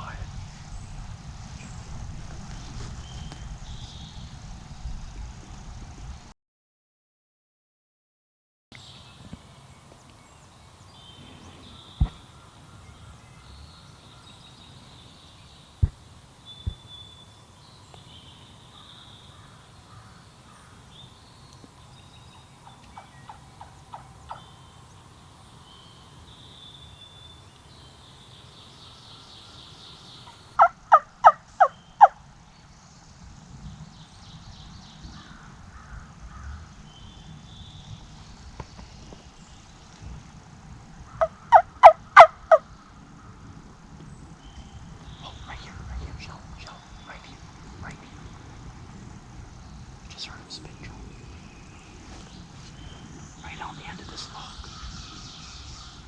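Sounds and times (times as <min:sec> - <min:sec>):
songbirds chirping: 0:08.7 - 0:56.0
sharp knocks: 0:12.0 - 0:12.2
turkey gobbling: 0:22.4 - 0:24.6, 0:30.2 - 0:32.1, 0:41.2 - 0:42.6.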